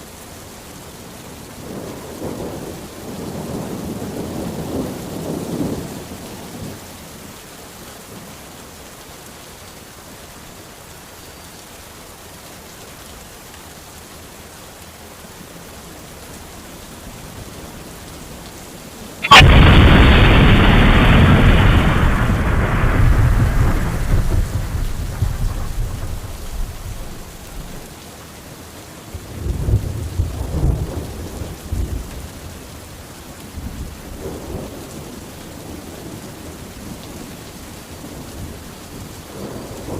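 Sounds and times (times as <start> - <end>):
rain hiss: 0.0 - 39.9
thunder rolling: 19.2 - 27.8.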